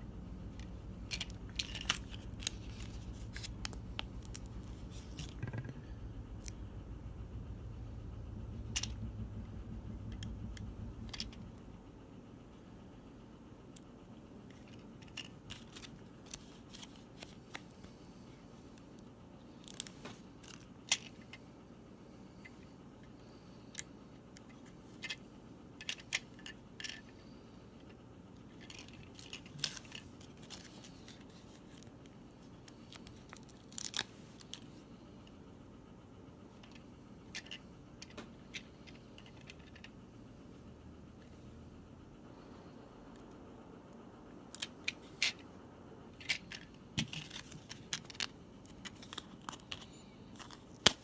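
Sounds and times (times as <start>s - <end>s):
low hum: 0.0s - 16.4s
plastic parts clicking and crinkling: 0.4s - 6.6s, 10.0s - 11.6s, 13.7s - 18.0s, 18.7s - 21.4s, 22.4s - 35.4s, 36.5s - 40.1s, 43.1s - 45.5s, 46.2s - 51.0s.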